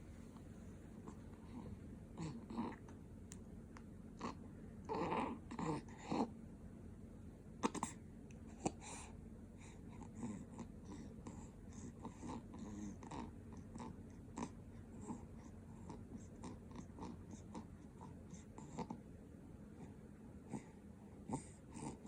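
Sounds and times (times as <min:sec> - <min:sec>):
baby grunting: 0:01.1 - 0:02.8, 0:04.2 - 0:06.3, 0:07.6 - 0:08.0.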